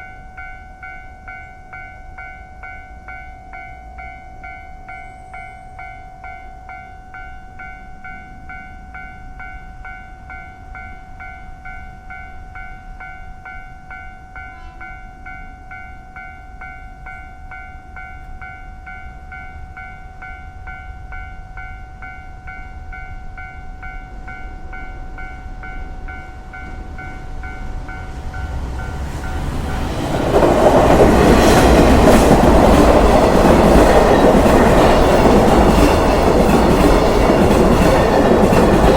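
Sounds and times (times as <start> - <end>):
steady high tone: 0.0 - 38.9
train passing: 1.2 - 38.9
wheel and carriage clatter: 29.8 - 38.9.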